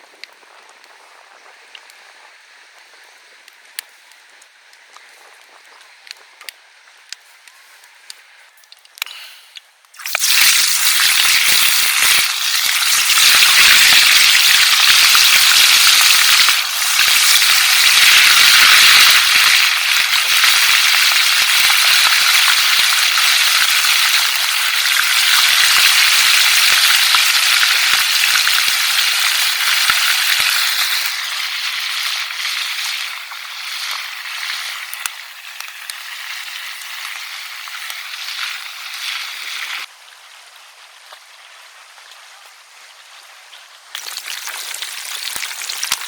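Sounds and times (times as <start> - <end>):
fish sizzling in hot oil: 9.9 - 46.0.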